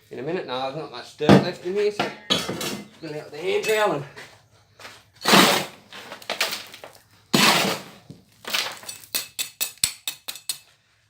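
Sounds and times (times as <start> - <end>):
trowel scraping dirt: 5.2 - 9.1
short knocks and clinks: 5.2 - 10.6.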